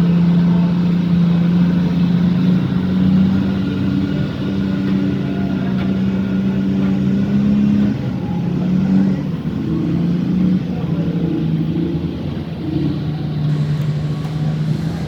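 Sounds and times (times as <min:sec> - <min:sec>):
large diesel engine running: 0:00.0 - 0:15.0.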